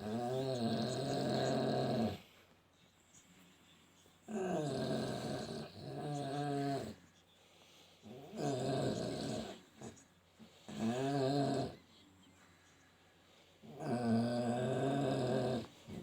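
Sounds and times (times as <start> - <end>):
dog snoring loudly: 0.0 - 2.3, 4.3 - 7.0, 8.1 - 10.0, 10.7 - 11.8, 13.6 - 16.0.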